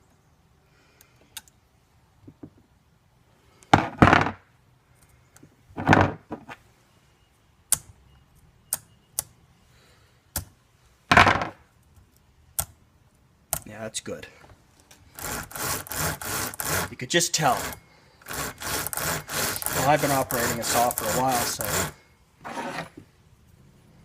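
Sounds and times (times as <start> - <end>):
chainsaw chain noisy bursts: 15.1 - 22.0.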